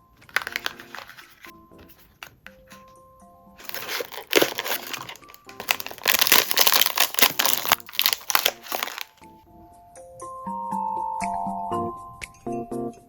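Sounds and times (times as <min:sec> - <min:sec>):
packaging wrapper crinkling: 0:00.0 - 0:02.9, 0:03.6 - 0:09.2
background music: 0:00.0 - 0:13.0.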